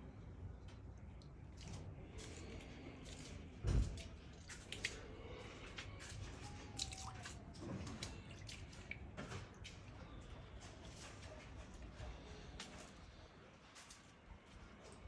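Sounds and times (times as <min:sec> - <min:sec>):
water dripping: 0:03.0 - 0:05.3, 0:06.0 - 0:09.9.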